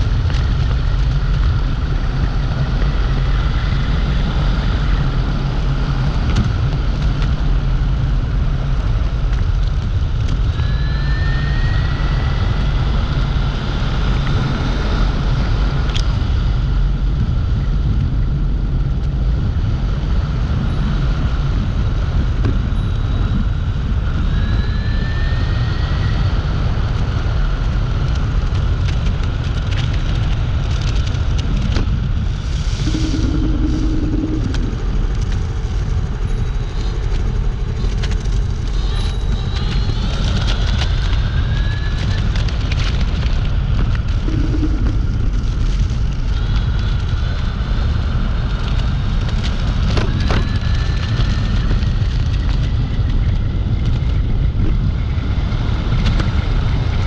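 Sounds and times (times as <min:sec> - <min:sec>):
wind and road noise: 0:00.0 - 0:57.0
electric motor whine: 0:10.3 - 0:14.4, 0:32.3 - 0:47.1.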